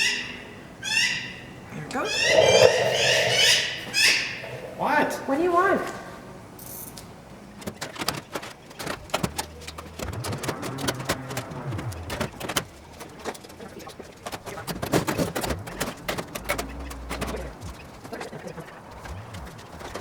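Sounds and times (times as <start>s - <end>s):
birds calling: 0.0s - 6.6s, 7.4s - 20.0s.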